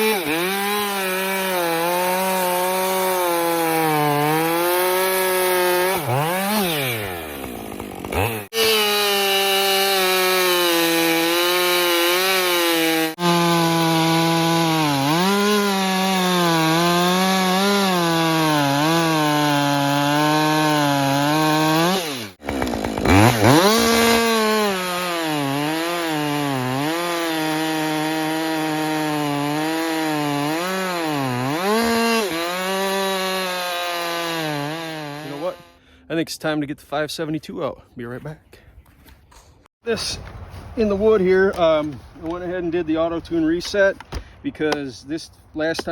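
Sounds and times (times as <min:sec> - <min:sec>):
chainsaw cutting wood: 0:00.0 - 0:35.8.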